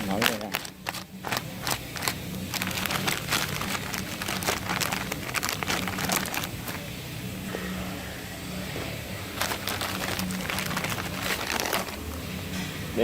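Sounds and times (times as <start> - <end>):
plastic packaging crinkling: 0.0 - 6.9, 9.3 - 12.4
steady low hum: 0.0 - 13.0.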